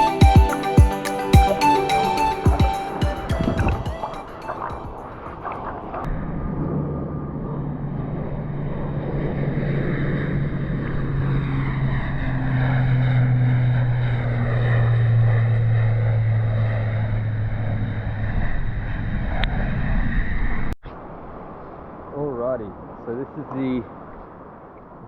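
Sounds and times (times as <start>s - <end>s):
airplane engine drone overhead: 1.6s - 20.8s.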